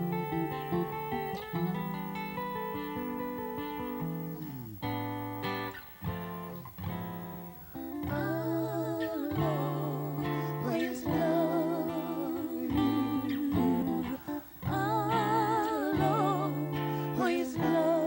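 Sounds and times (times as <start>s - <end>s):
acoustic guitar: 0.0s - 18.0s
person humming a melody: 8.0s - 18.0s.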